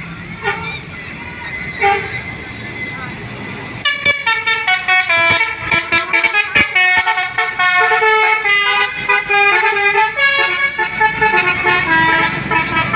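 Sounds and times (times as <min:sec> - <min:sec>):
musical bus horn playing melody: 0:00.4 - 0:00.8, 0:01.8 - 0:02.3, 0:03.8 - 0:12.9.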